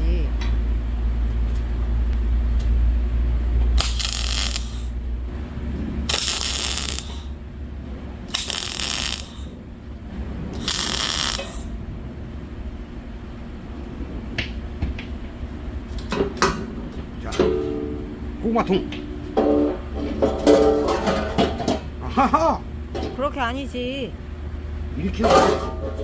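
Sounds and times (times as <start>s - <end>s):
steady low hum: 0.0s - 26.0s
electric arc welding crackling: 3.7s - 5.0s, 6.0s - 7.4s, 8.2s - 9.6s, 10.5s - 11.7s.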